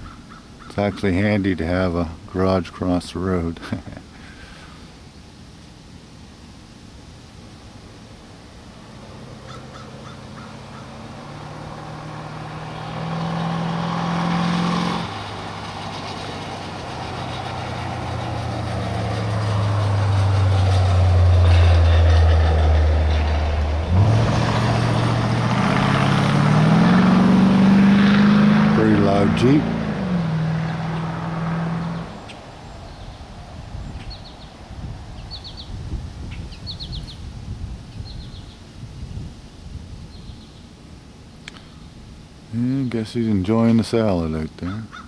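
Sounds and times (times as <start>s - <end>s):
engine accelerating through gears: 10.0s - 32.4s.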